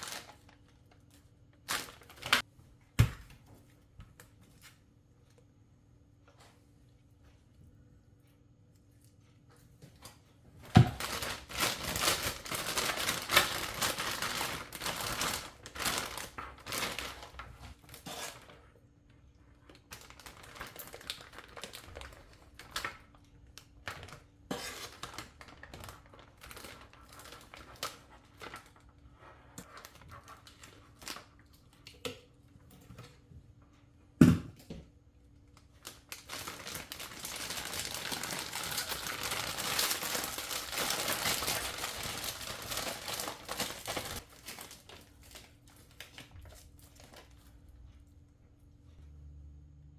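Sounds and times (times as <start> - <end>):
rustling and crinkling: 0.0 - 2.5, 8.8 - 31.8, 35.6 - 48.1.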